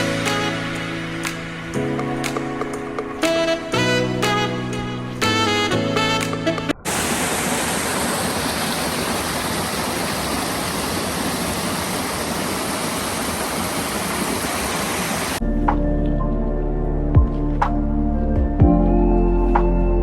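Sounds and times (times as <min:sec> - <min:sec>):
waterfall rushing: 0:06.8 - 0:15.4.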